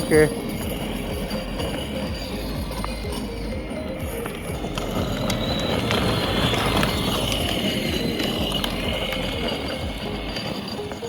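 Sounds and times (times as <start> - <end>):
electric motors running: 0.0 - 11.0
plastic wheels rolling: 0.0 - 11.0.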